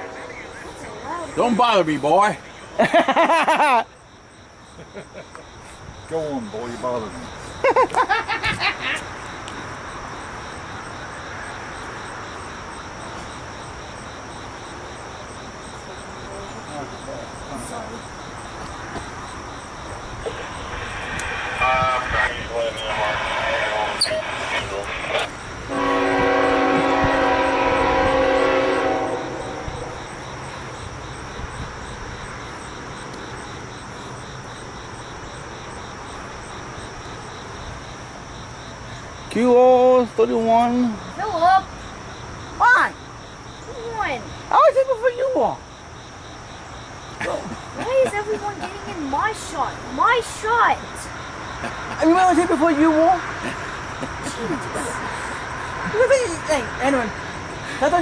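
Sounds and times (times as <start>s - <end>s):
freight train rumbling past: 0.0s - 2.4s, 19.8s - 32.4s
steady high drone: 0.0s - 2.9s, 19.3s - 31.1s
insects chirping: 0.0s - 58.0s
low outdoor hiss: 0.0s - 58.0s
train air horn chord: 25.7s - 30.0s.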